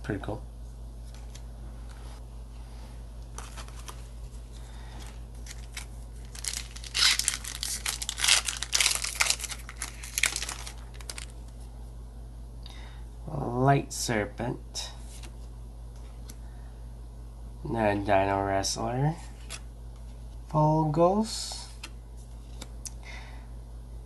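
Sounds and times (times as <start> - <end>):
foil pack crinkling and tearing: 4.6 - 11.5.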